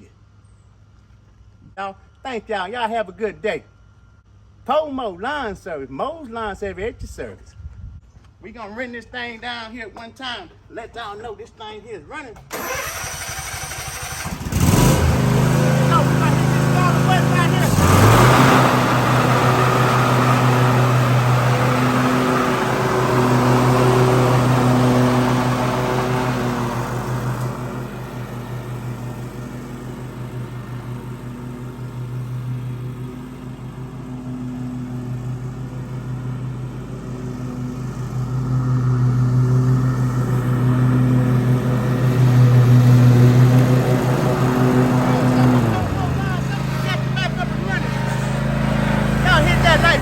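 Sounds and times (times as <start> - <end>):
lawn mower engine running: 12.4 - 50.0.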